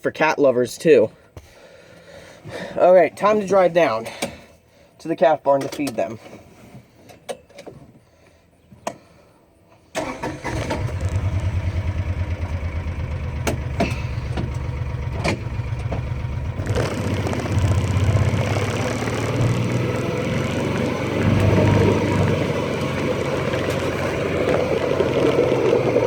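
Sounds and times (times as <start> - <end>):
vehicle engine starting and running: 10.0 - 26.0.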